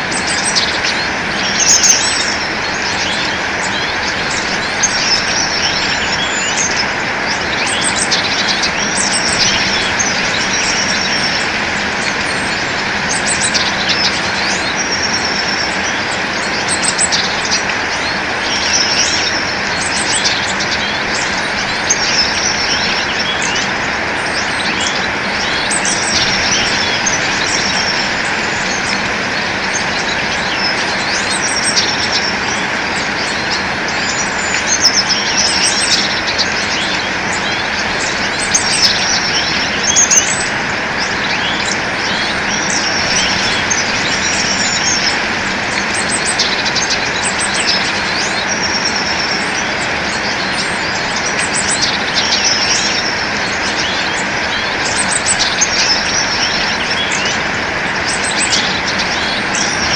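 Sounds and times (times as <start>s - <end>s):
songbirds chirping: 0.0s - 59.9s
steady rushing noise: 0.0s - 59.9s.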